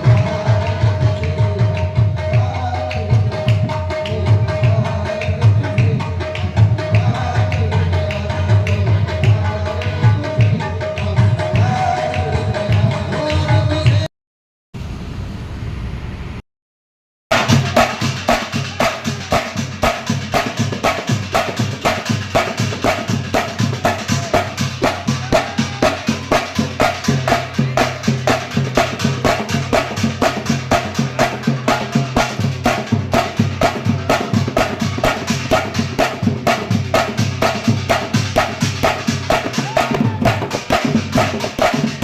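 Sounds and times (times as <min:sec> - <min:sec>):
fast drum beat: 0:17.3 - 0:42.0.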